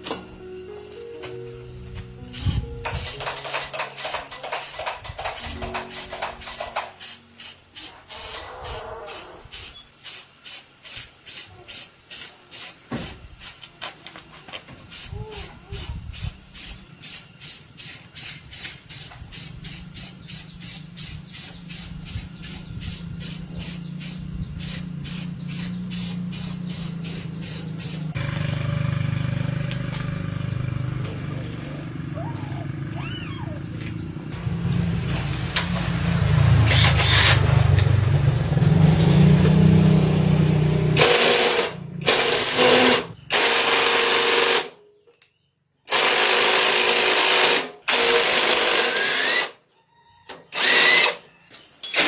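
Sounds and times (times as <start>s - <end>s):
rhythmic scraping strokes: 2.3s - 9.2s
machine hum: 20.2s - 43.2s.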